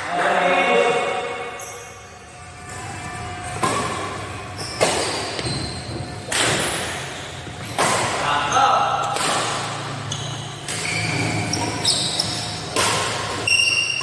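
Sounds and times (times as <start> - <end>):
racket hitting shuttlecock: 3.5 - 14.0.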